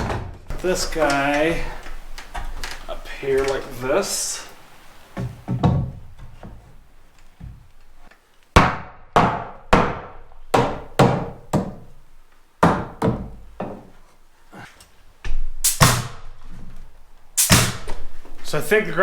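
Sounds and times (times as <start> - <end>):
hammer striking wood: 8.6 - 11.9, 12.6 - 13.9, 15.7 - 16.2, 17.4 - 17.9.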